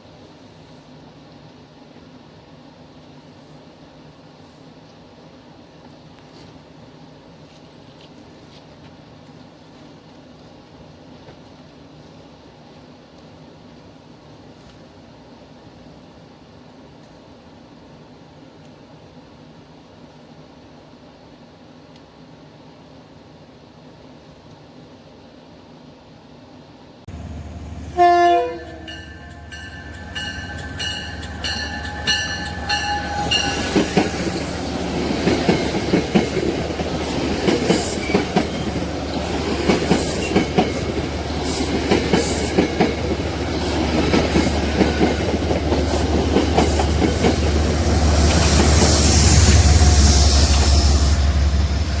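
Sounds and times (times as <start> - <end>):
low train rumble: 27.1 - 52.0
train horn blast: 27.2 - 34.4, 48.0 - 52.0
rhythmic train wheel clicks: 28.7 - 49.2
repeating ringing: 28.8 - 34.0.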